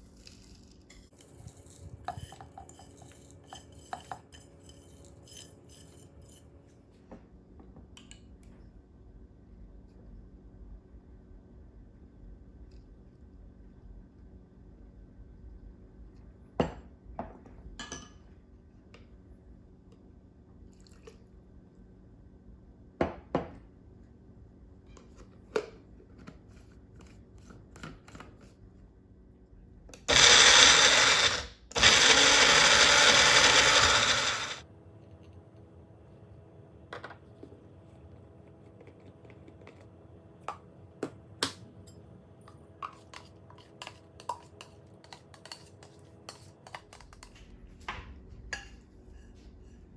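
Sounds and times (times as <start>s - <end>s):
electric mixer grinder running: 30.1s - 34.6s.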